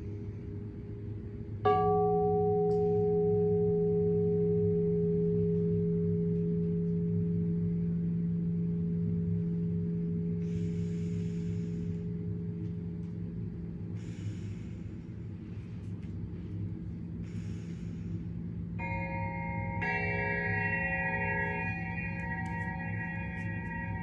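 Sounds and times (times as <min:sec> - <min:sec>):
low ringing drone: 0:00.0 - 0:24.0
bell-like chimes: 0:01.7 - 0:06.8, 0:18.8 - 0:24.0.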